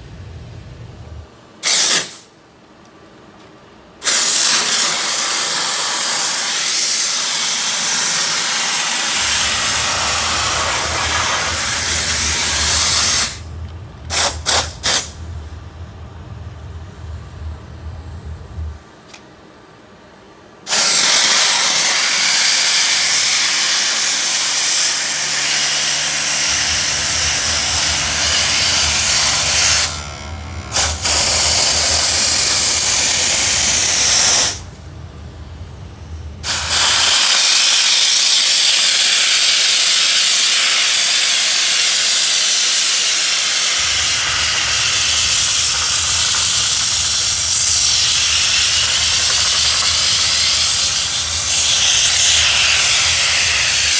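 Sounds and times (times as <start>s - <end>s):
low hum: 0.0s - 1.4s, 9.2s - 20.1s, 24.8s - 36.4s
steam jet hissing: 1.6s - 2.4s, 4.0s - 13.5s, 14.1s - 15.4s, 20.6s - 34.8s, 36.4s - 53.9s.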